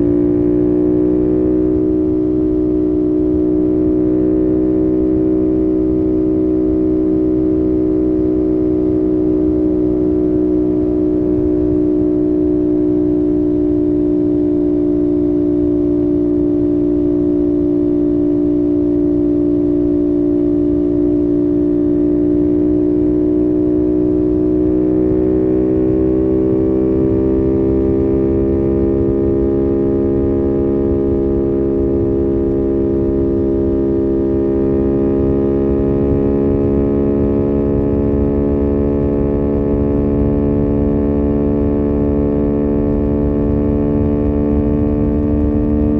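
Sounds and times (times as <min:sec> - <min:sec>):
motorcycle engine cruising: 0:00.0 - 0:45.9
wind rumble: 0:22.3 - 0:45.9.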